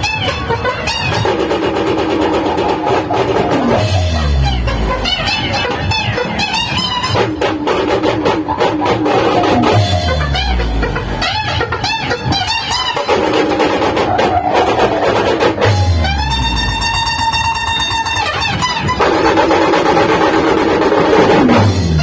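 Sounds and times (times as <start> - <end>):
drums and percussion: 0.0 - 22.0
plucked string melody: 1.3 - 19.1
held keyboard chord: 2.9 - 6.4, 9.0 - 12.0
deep bass swoop: 3.2 - 5.5, 9.1 - 11.4, 15.6 - 17.2.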